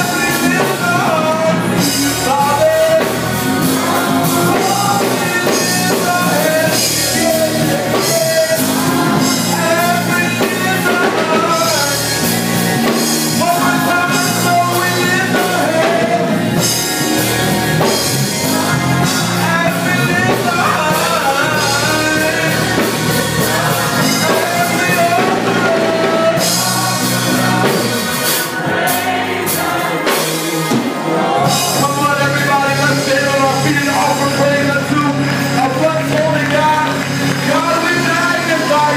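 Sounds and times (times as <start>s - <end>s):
band with drums: 0.0s - 38.9s
gospel group singing: 0.0s - 38.9s.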